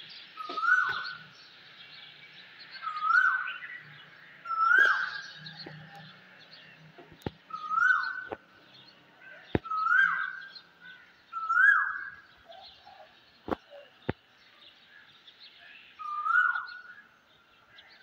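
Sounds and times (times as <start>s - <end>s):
faint bird chirping: 0.0s - 18.0s
bird call rising and falling: 0.4s - 1.3s, 2.6s - 8.5s, 9.4s - 10.7s, 11.3s - 14.1s, 16.0s - 17.0s.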